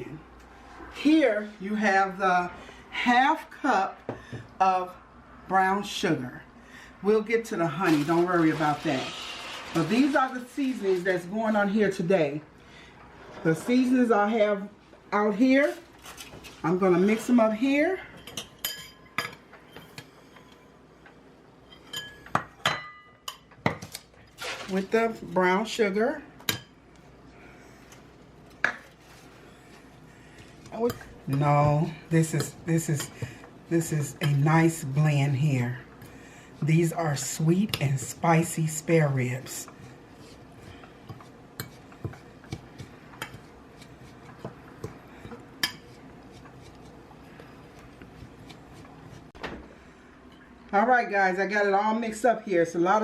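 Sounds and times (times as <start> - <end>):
utensil tapping against a bowl: 41.0 - 45.8.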